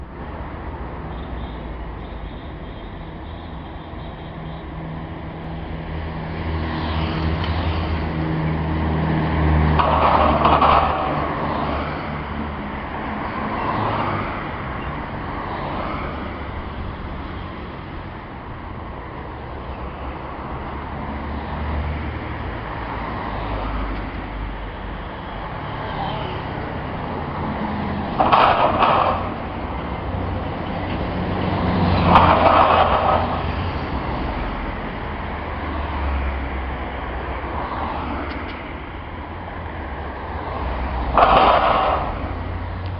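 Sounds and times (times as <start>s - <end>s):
road traffic passing: 0.0s - 42.9s
metal road plate clanking: 9.6s - 15.1s, 27.2s - 34.7s, 40.8s - 42.9s.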